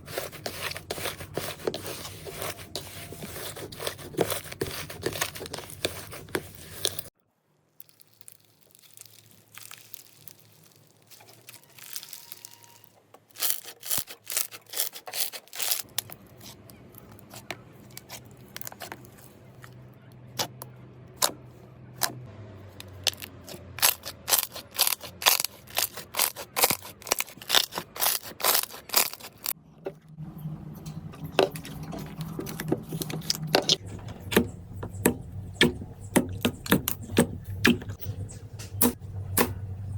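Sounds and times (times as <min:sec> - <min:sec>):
slime crackling and popping: 0:07.7 - 0:16.2, 0:23.0 - 0:29.5.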